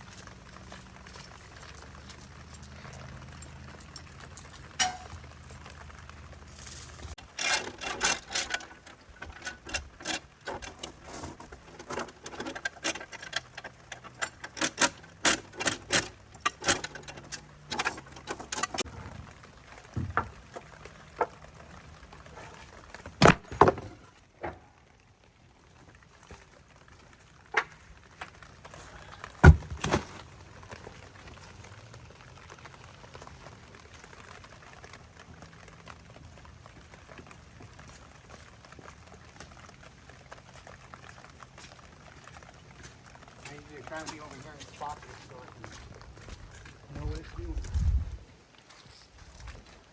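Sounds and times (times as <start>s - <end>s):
hard objects clicking and knocking: 6.4s - 18.9s.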